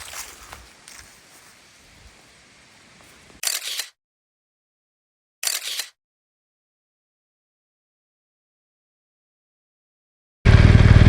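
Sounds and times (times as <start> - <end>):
faint outdoor ambience: 0.0 - 3.4
camera shutter click: 3.4 - 4.0, 5.4 - 6.0.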